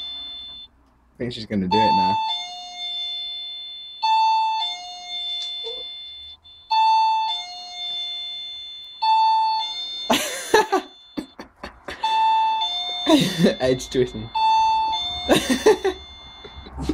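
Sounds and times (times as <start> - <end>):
doorbell ding-dong chime: 0.0 - 0.7, 4.2 - 16.8.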